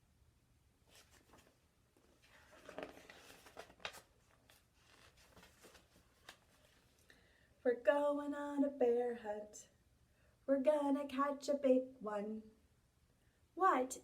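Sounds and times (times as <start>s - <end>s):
faint rustling: 0.8s - 7.1s.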